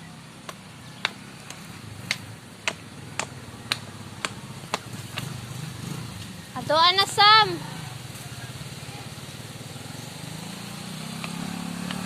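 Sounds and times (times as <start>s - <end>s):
tool knocking on bamboo: 1.0s - 5.3s.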